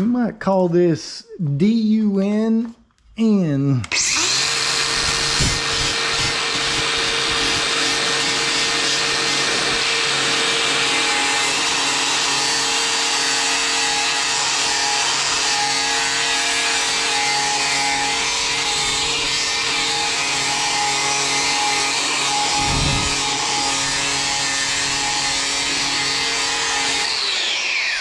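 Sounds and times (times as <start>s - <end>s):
power tool whooshing: 3.8s - 10.3s, 19.6s - 28.0s.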